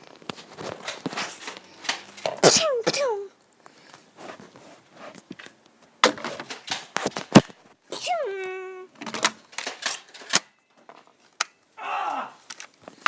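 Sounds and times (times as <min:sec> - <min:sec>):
person crying out: 0:07.9 - 0:08.9, 0:11.8 - 0:12.4.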